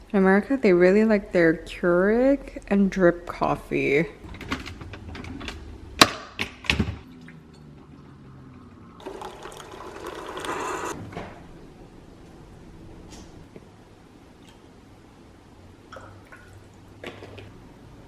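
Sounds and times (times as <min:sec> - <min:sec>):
coffee running into cup: 0:09.0 - 0:10.9.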